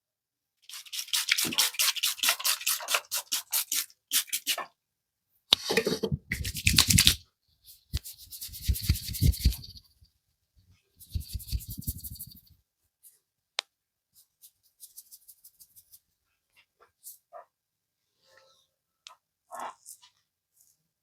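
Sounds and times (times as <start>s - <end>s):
hands scrubbing hair: 0.7s - 4.6s, 8.0s - 9.6s.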